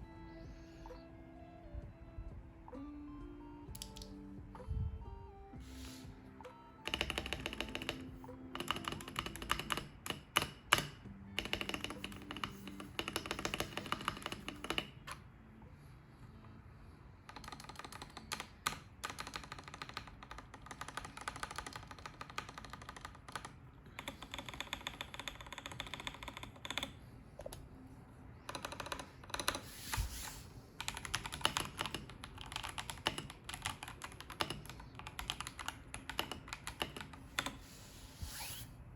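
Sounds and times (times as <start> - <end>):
mechanical keyboard typing clacks: 6.8 - 15.2, 17.3 - 27.0, 28.4 - 29.6, 30.8 - 37.6.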